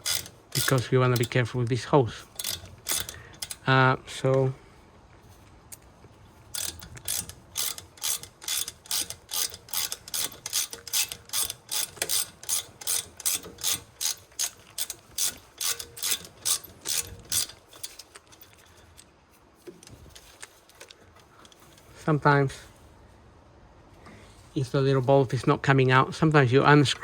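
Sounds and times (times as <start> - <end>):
socket ratchet clicking: 0.0 - 1.4, 2.3 - 3.6, 6.6 - 18.6.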